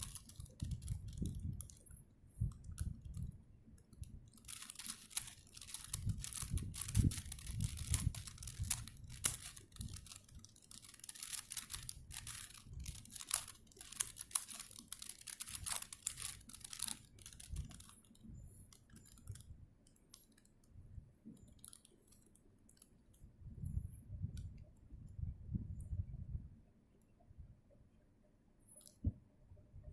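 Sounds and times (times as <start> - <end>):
plastic puzzle cube clicking: 0.0 - 1.9, 3.9 - 20.5.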